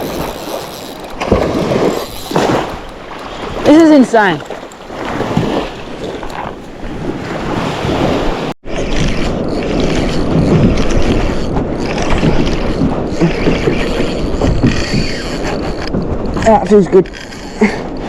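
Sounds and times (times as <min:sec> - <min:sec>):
water sloshing against kayak: 0:00.0 - 0:09.0
wind buffeting microphone: 0:00.0 - 0:18.0.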